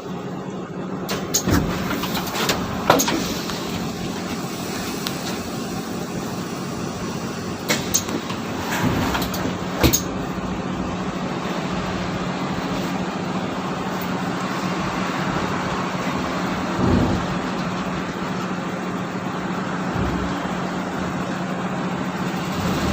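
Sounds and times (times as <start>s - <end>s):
bus engine and road noise: 0.0s - 22.9s
low steady hum: 13.7s - 22.2s
knocks and rattles: 16.6s - 18.1s, 19.9s - 20.9s.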